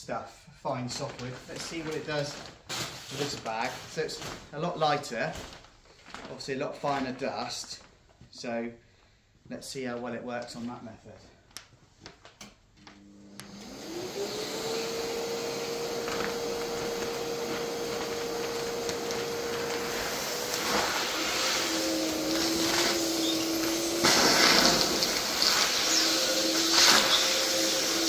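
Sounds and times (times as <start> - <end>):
vacuum cleaner motor whine: 12.9 - 28.0.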